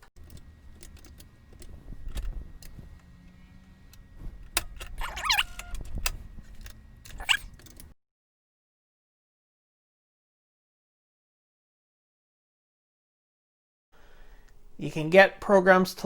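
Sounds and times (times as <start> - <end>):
keyboard keys clicking: 0.0 - 7.9
short squeak: 4.9 - 6.1, 7.1 - 7.7.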